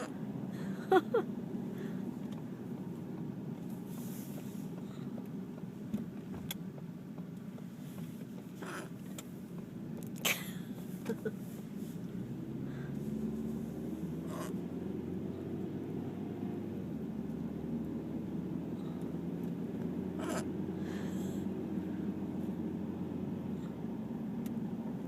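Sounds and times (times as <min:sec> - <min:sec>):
road noise inside moving car: 0:00.0 - 0:25.0
sudden hiccups: 0:20.2 - 0:20.4.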